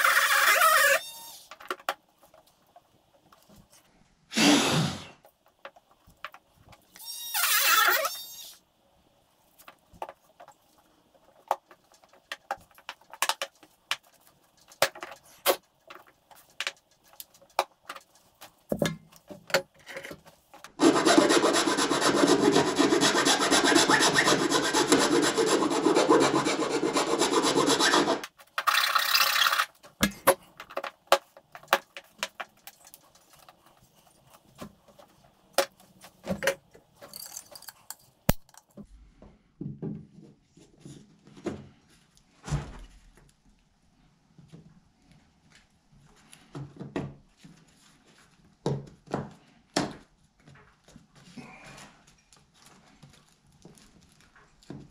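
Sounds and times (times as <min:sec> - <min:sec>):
rotary tool grinding: 0:00.0 - 0:01.4, 0:20.8 - 0:29.7.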